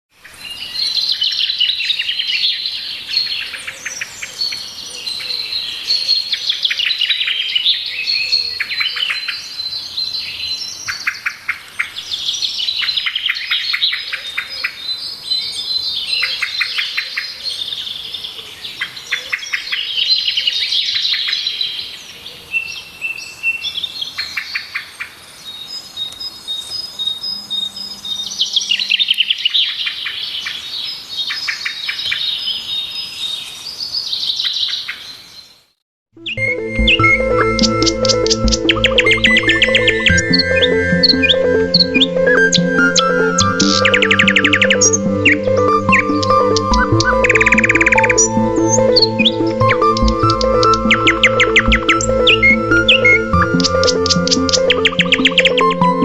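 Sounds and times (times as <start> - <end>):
birds chirping: 25.4 - 31.1, 36.2 - 56.0.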